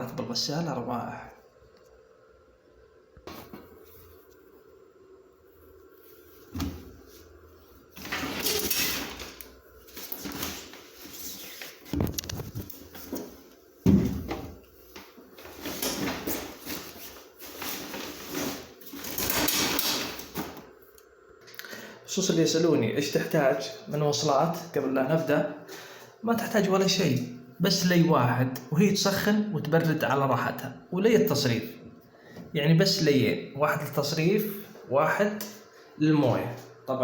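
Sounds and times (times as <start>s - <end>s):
plastic parts rattling and scraping: 8.0s - 13.3s, 15.4s - 20.6s.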